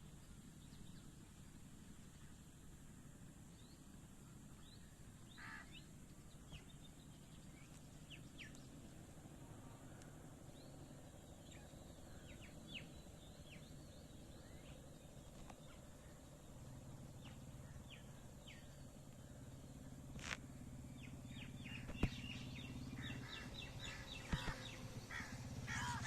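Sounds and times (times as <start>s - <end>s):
low background hum: 0.0s - 26.0s
birds chirping: 3.5s - 26.0s
harsh bird call: 21.7s - 26.0s.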